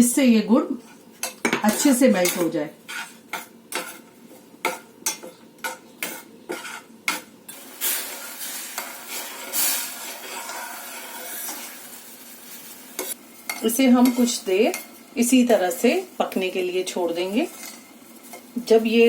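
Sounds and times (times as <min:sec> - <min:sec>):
steady sizzle: 0:00.0 - 0:19.0
spoon clinking and scraping pan: 0:00.8 - 0:11.8, 0:13.0 - 0:15.0, 0:17.5 - 0:18.6.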